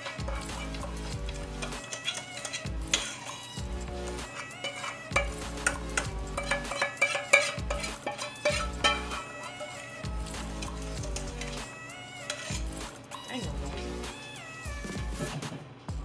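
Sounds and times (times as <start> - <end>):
spoon scraping and clinking: 0.0 - 12.8
background music with low beat: 0.0 - 16.0.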